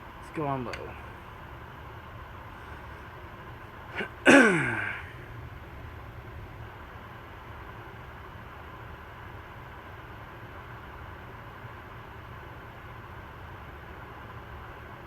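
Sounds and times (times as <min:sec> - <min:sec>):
ceiling fan running: 0:00.0 - 0:10.7.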